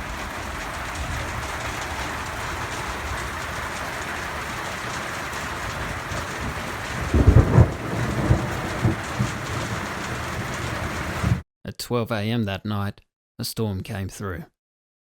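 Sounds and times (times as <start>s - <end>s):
heavy rain: 0.0s - 11.4s
thunder crash and rumble: 0.0s - 11.4s.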